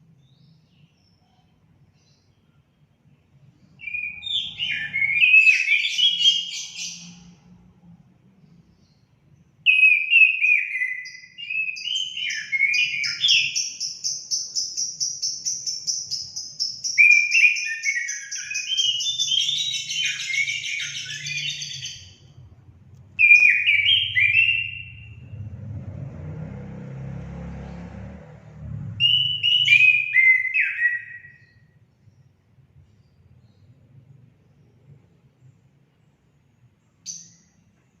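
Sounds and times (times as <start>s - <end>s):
falling whistled bird notes: 23.2s - 25.3s, 29.0s - 31.6s
low rushing noise: 24.9s - 29.4s.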